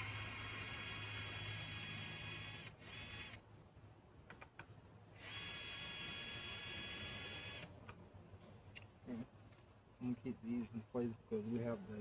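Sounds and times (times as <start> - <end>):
small motor whirring: 0.0 - 3.4, 5.1 - 7.7.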